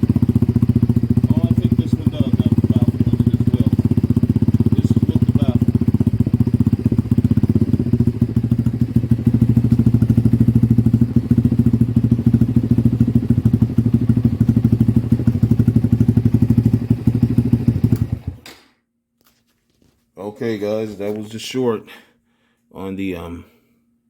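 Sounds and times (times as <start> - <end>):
motorcycle engine running: 0.0 - 18.4.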